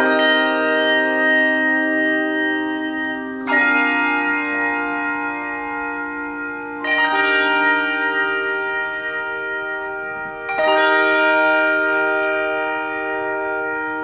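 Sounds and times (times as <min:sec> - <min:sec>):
handbell choir ringing chords: 0:00.0 - 0:14.0.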